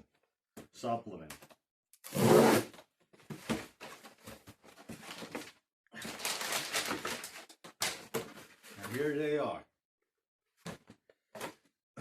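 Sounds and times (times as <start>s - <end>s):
packaging rustling: 3.8s - 9.0s.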